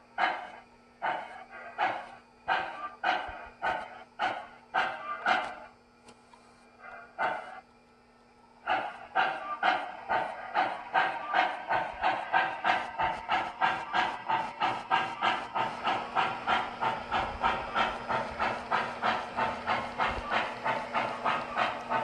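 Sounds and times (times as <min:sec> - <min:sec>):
model steam locomotive chuffing: 0:00.0 - 0:05.8, 0:06.7 - 0:07.7, 0:08.6 - 0:22.0.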